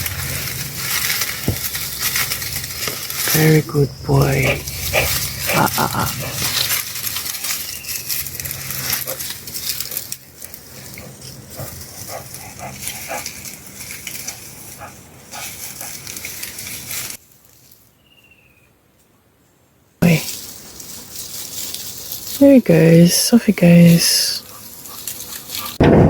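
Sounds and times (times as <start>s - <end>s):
dog growling low: 0.0s - 7.1s
crackling and rustling: 0.0s - 18.0s, 20.0s - 26.0s.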